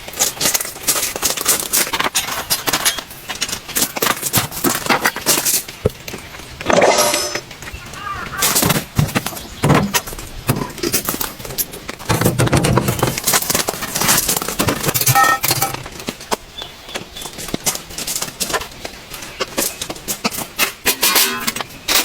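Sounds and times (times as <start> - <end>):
objects knocking and clattering: 0.2 - 16.4, 19.5 - 22.0
metallic clink: 6.7 - 7.5.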